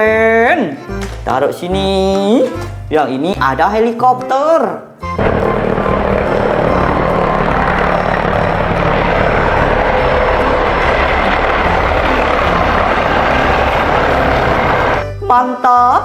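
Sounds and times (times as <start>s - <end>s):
helicopter engine and rotor: 5.2s - 15.0s.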